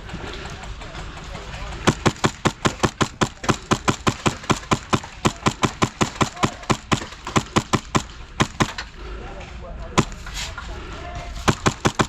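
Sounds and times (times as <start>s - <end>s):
airsoft gun shots: 1.8s - 8.9s, 10.0s - 10.2s, 11.4s - 12.0s.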